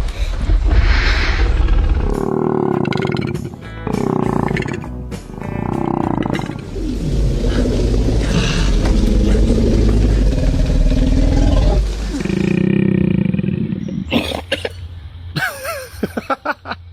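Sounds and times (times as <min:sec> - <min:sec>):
koala growling roar: 0:01.2 - 0:14.5.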